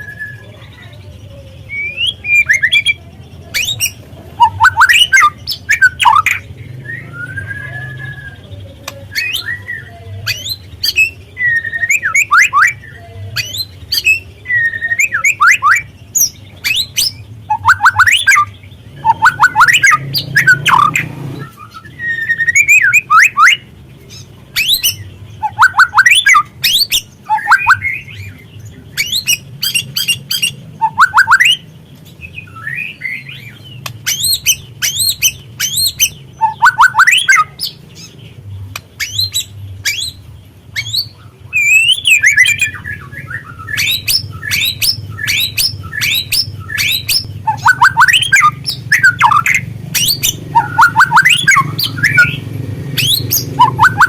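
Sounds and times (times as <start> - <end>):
bird chirping and whistling: 0.0 - 0.6, 1.6 - 54.0.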